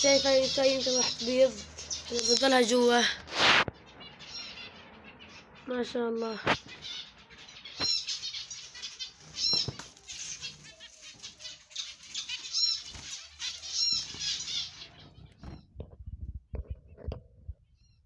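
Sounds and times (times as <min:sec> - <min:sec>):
birds fluttering wings: 0:00.0 - 0:03.7, 0:07.8 - 0:17.1
bird chirps: 0:00.0 - 0:15.8.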